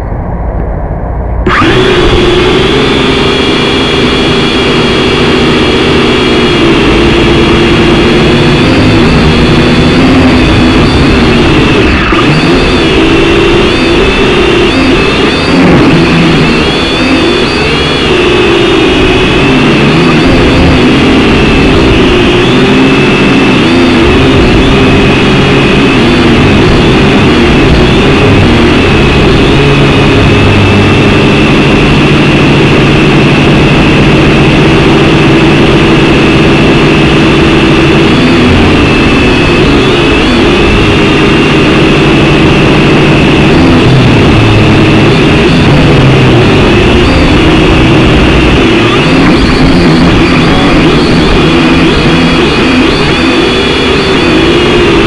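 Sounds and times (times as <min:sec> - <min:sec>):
toy quadcopter motors whining: 0:01.5 - 0:10.8.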